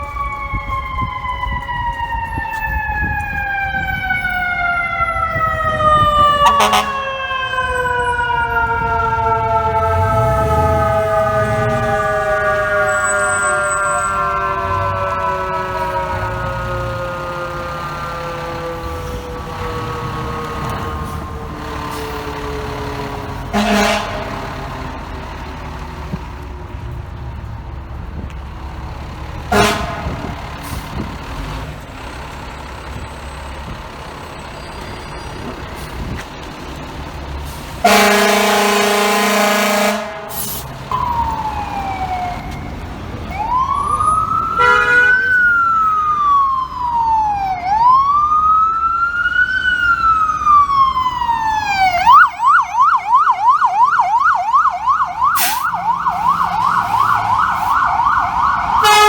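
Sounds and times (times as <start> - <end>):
siren wailing and yelping: 0.0 - 22.6, 40.9 - 59.0
city traffic: 0.0 - 59.0
fire truck air horn: 5.1 - 25.0, 29.5 - 31.1, 37.4 - 40.9, 43.8 - 45.5, 55.3 - 59.0.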